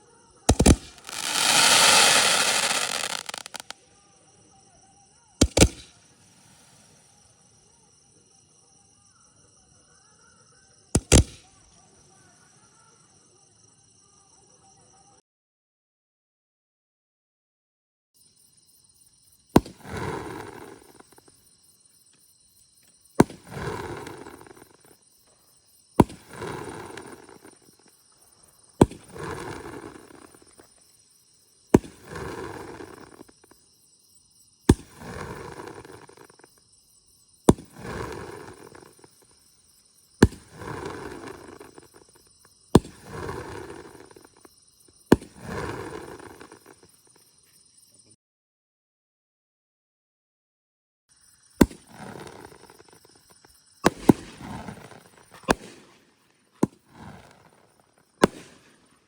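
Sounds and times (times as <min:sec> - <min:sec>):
firework shots: 0:00.5 - 0:03.7, 0:05.4 - 0:06.8, 0:11.0 - 0:11.4, 0:26.0 - 0:27.6, 0:28.8 - 0:30.5, 0:37.5 - 0:39.1, 0:40.2 - 0:42.1, 0:42.8 - 0:44.4, 0:51.6 - 0:53.0, 0:53.8 - 0:57.6, 0:58.2 - 0:59.0
hissing crackling firework burst: 0:00.5 - 0:03.7, 0:05.4 - 0:07.6, 0:19.6 - 0:21.2, 0:23.2 - 0:24.9, 0:26.0 - 0:27.9, 0:28.8 - 0:30.6, 0:31.8 - 0:33.3, 0:34.7 - 0:36.4, 0:37.6 - 0:39.3, 0:40.2 - 0:42.1, 0:42.8 - 0:44.4, 0:45.2 - 0:46.8, 0:51.7 - 0:53.0, 0:53.8 - 0:56.2, 0:56.8 - 0:59.0.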